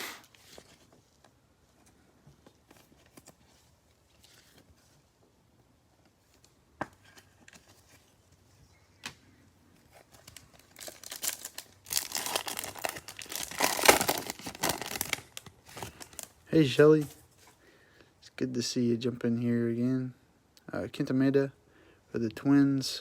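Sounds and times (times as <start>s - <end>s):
wrapper tearing and crinkling: 10.2s - 16.3s.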